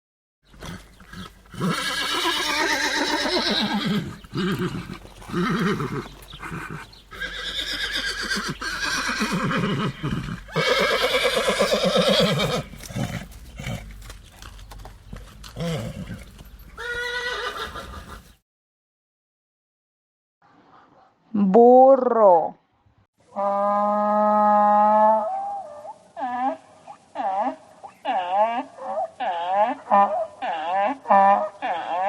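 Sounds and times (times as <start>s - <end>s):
horse whinnying: 0.6s - 14.0s, 15.6s - 18.4s.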